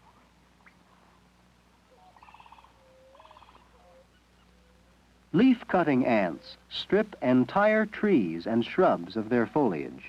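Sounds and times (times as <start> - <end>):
animal trills: 1.9 - 4.8.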